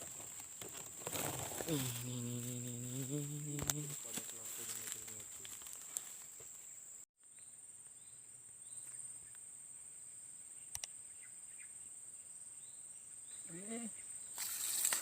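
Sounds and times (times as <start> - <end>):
insects buzzing: 0.0 - 15.0
sharp clicks: 10.7 - 10.9.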